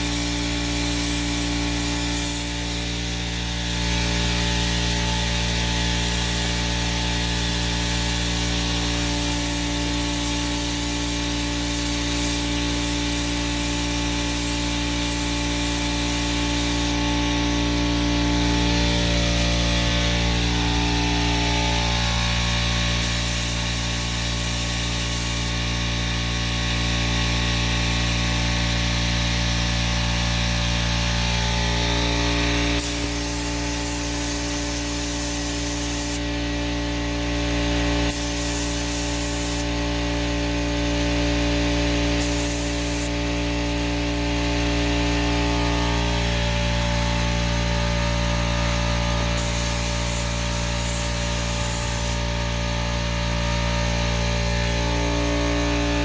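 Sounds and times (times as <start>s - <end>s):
paint spray gun hissing: 0.0s - 25.7s, 31.3s - 43.3s, 48.4s - 52.8s
machine hum: 0.0s - 56.0s.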